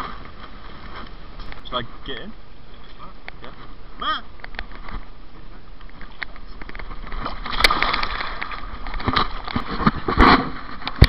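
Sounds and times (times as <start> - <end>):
water splashing and sloshing: 3.0 - 11.0.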